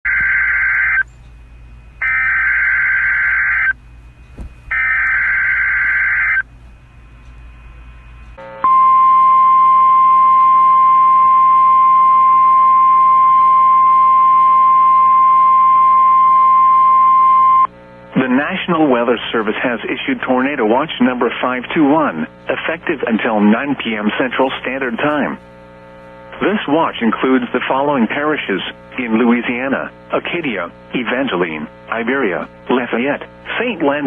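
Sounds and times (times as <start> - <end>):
shrill buzzing digital data bursts: 0.1 - 1.0, 2.0 - 3.8, 4.7 - 6.4.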